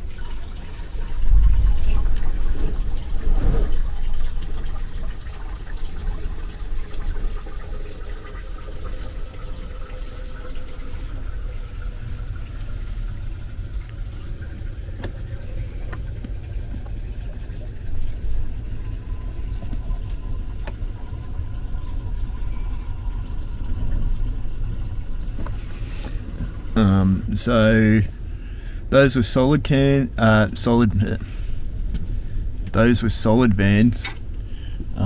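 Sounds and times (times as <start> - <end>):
storm wind gusting: 1.0 - 5.4.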